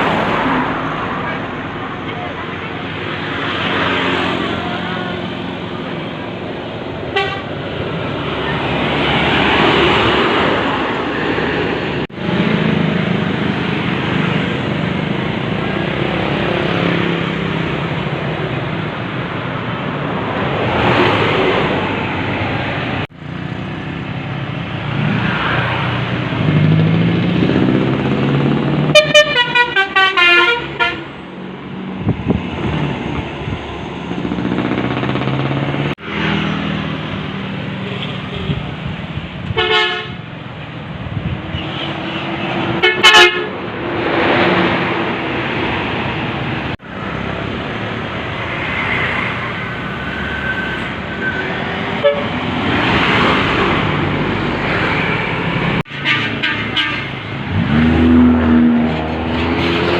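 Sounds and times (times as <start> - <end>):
vehicles passing by: 0.0 - 59.9
multi-tone bus air horn: 7.1 - 7.6, 28.9 - 31.1, 39.6 - 40.2, 42.8 - 43.5, 52.0 - 52.4, 55.9 - 57.2.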